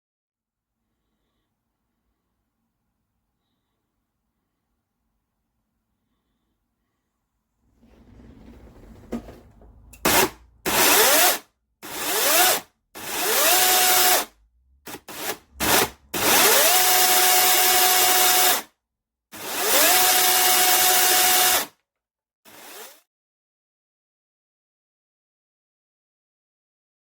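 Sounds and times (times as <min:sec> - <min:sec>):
electric chainsaw whining: 0:10.1 - 0:14.3, 0:14.9 - 0:18.7, 0:19.4 - 0:21.7, 0:22.5 - 0:23.0.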